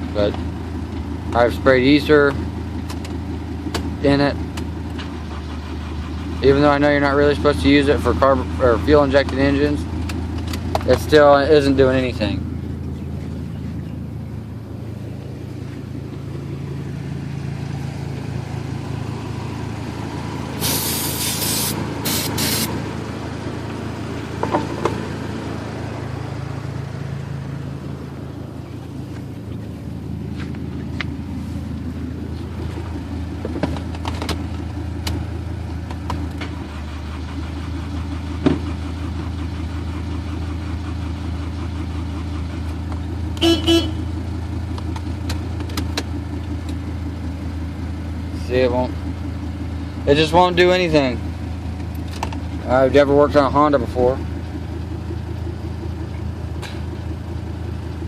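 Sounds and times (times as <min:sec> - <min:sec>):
car engine cranking: 0:00.0 - 0:58.0
bursts of hiss: 0:20.6 - 0:22.7
short horn-like beep: 0:43.4 - 0:44.0.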